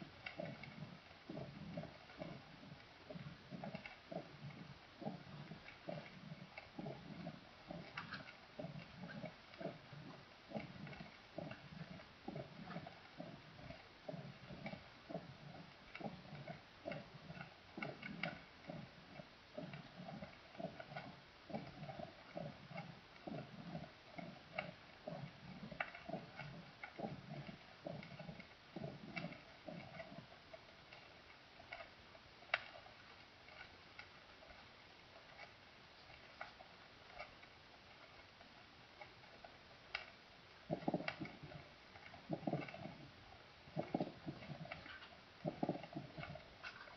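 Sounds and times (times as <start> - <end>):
heartbeat through stethoscope: 0.0 - 31.0, 40.6 - 46.9
faint ticking: 0.0 - 46.9.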